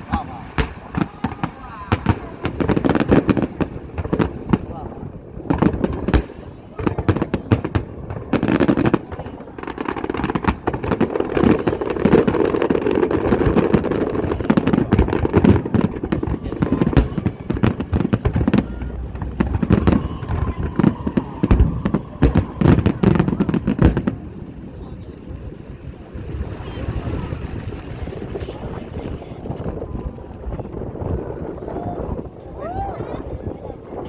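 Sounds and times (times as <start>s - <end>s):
fireworks bangs and crackling: 0.0s - 34.0s.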